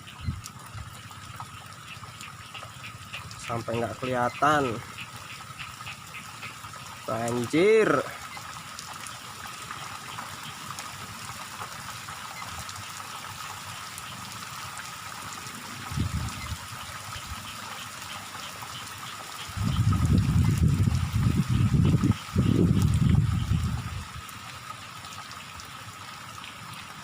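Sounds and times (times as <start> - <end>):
rain and running water: 0.0 - 27.0
wind buffeting microphone: 15.9 - 16.7, 19.5 - 24.2.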